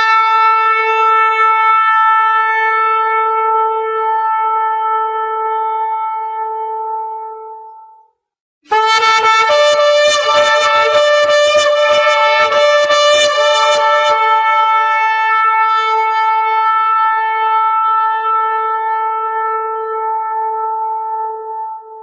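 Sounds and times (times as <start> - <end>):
trumpet-like horn blast: 0.0 - 7.7, 8.7 - 22.0
higher horn note: 8.7 - 22.0.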